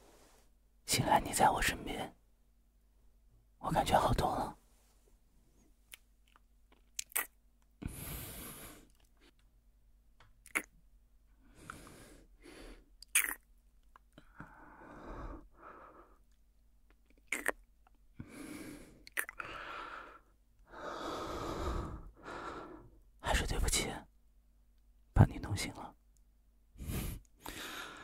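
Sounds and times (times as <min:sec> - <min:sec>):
wet mouth clicks: 0:05.9 - 0:07.4, 0:10.4 - 0:10.8, 0:13.0 - 0:14.2, 0:16.9 - 0:18.0, 0:19.0 - 0:19.4
man breathing softly: 0:07.8 - 0:09.4, 0:11.4 - 0:13.0, 0:14.2 - 0:16.3, 0:18.2 - 0:23.0, 0:26.8 - 0:28.0.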